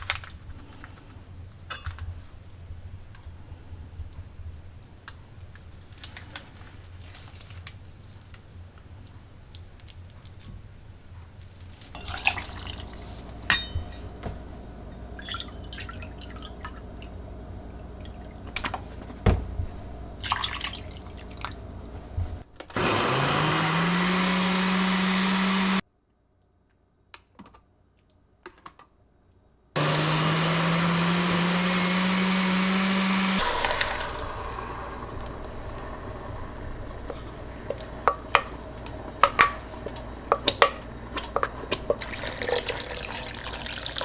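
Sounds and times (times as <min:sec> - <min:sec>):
kitchen knocks and clicks: 0:12.0 - 0:16.7, 0:36.6 - 0:42.5
electric blender motor whining: 0:12.8 - 0:25.8, 0:29.8 - 0:44.0.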